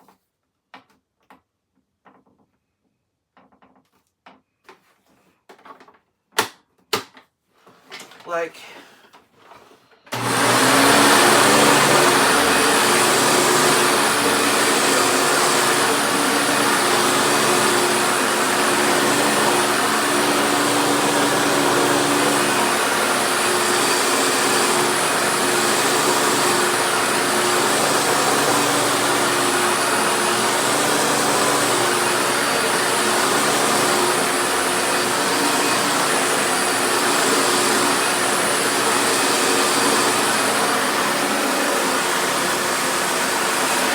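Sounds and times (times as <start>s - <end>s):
upright vacuum cleaner running: 10.1s - 43.9s.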